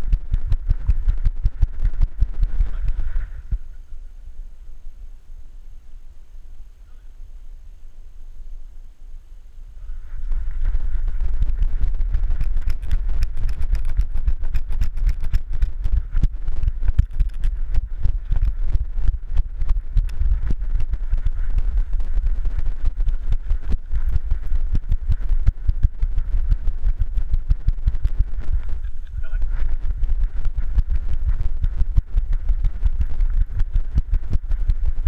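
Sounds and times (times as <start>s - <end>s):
wind rumble on camera: 0.0s - 35.0s.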